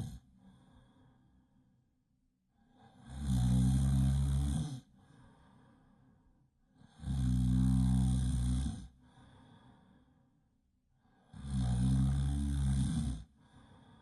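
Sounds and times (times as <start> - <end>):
loud snoring: 0.0 - 0.2, 2.8 - 4.9, 6.8 - 9.0, 11.3 - 13.3
quiet breathing out: 0.0 - 1.8, 2.5 - 11.8, 12.9 - 14.0.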